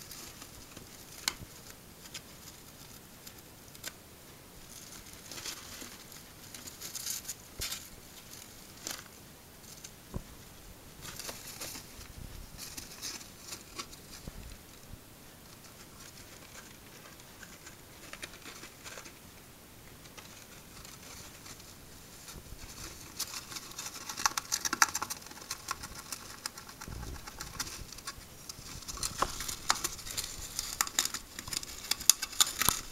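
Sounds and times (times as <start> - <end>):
hamster gnawing cardboard tube: 22.6 - 32.9.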